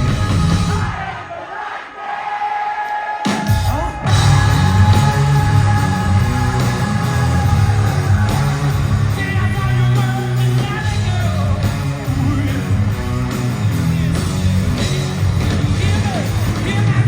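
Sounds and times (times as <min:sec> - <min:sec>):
bass guitar: 0:00.0 - 0:00.9, 0:04.1 - 0:17.0
drums: 0:00.0 - 0:17.0
person singing: 0:03.6 - 0:12.8
distorted electric guitar: 0:04.1 - 0:17.0.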